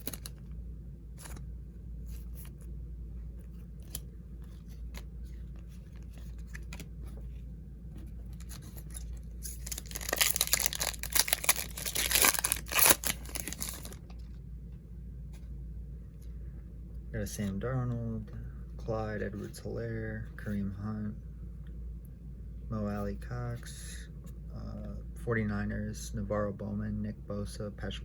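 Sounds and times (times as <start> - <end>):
wrapper being torn open: 0.0 - 0.3, 8.4 - 14.0
cards being handled clicks: 0.0 - 0.4, 3.8 - 6.9.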